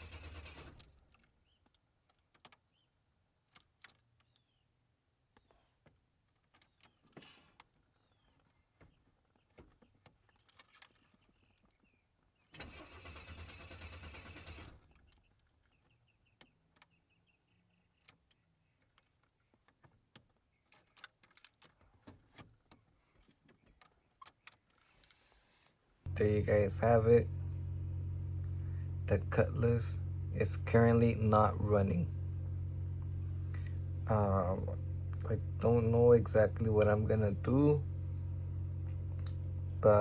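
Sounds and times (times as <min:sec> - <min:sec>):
starter cranking engine: 0:00.0 - 0:01.0, 0:12.5 - 0:15.1.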